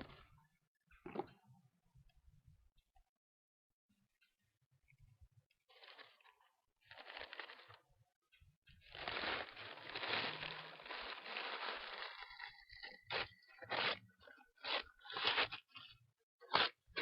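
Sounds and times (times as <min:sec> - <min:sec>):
cardboard crunching: 0:05.7 - 0:07.8, 0:08.8 - 0:17.0
cardboard tearing: 0:14.6 - 0:15.8, 0:16.4 - 0:17.0.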